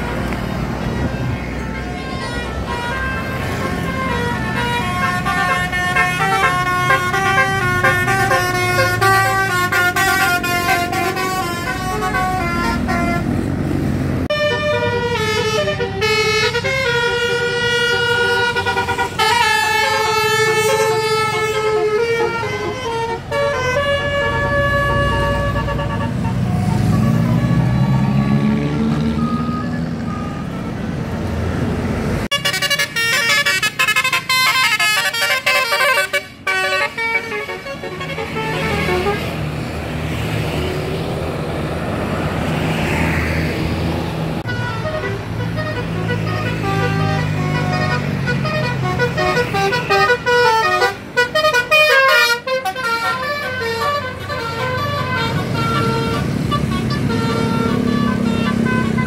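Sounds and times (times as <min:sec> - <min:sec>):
musical air horns playing melodies: 0:00.9 - 0:13.4, 0:14.3 - 0:30.6, 0:32.3 - 0:39.5, 0:44.4 - 0:59.0.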